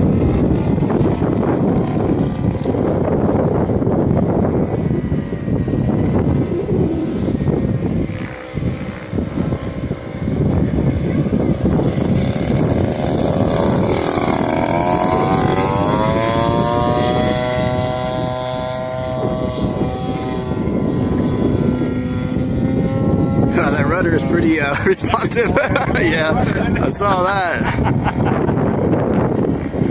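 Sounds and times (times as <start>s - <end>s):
model aircraft engine whining: 0.0s - 29.9s.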